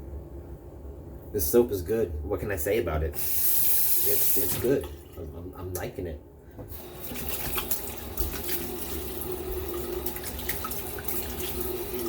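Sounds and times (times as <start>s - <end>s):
tap running into a sink: 6.6s - 12.0s.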